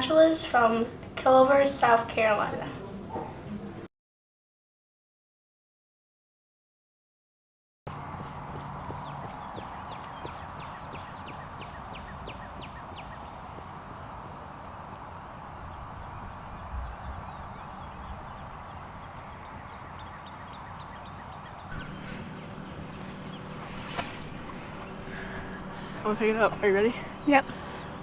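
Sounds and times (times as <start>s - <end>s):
birds chirping: 7.9s - 28.0s.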